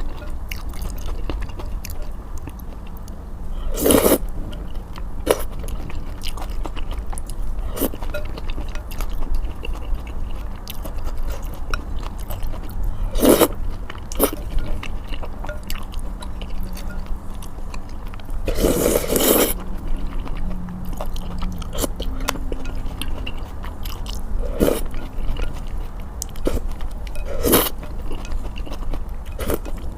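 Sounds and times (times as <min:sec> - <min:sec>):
low steady hum: 0:00.0 - 0:29.9
wet chewing: 0:00.0 - 0:29.9
slurping noodles: 0:03.7 - 0:04.2, 0:18.4 - 0:19.6.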